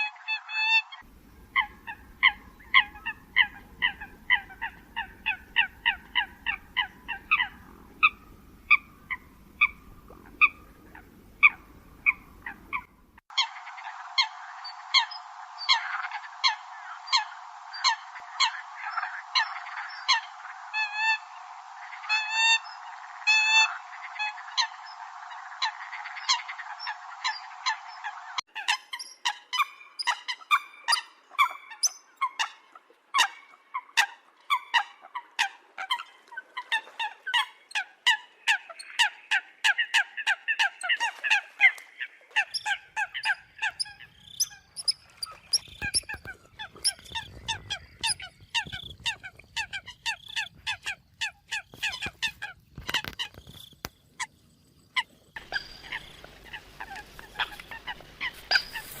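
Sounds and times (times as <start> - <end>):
coots honking calls: 0.0 - 13.5, 55.0 - 59.0.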